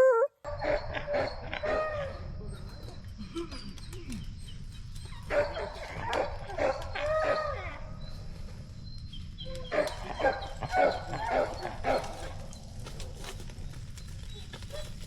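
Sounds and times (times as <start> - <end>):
hounds barking and bawling: 0.0 - 3.2, 4.9 - 8.0, 9.5 - 13.4.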